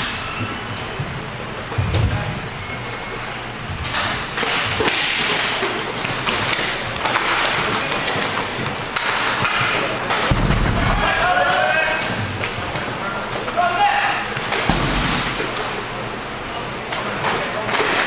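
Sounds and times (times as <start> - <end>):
sticks and puck clacking: 3.8 - 16.0, 16.9 - 18.0.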